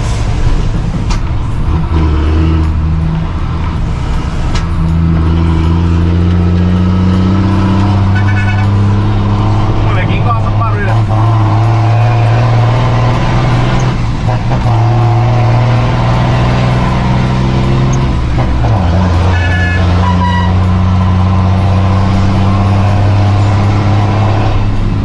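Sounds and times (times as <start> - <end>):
truck diesel engine running: 0.0 - 25.0.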